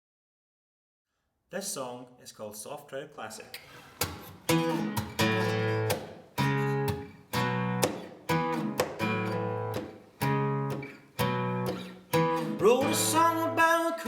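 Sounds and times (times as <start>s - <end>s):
acoustic guitar strumming chords: 4.2s - 14.0s.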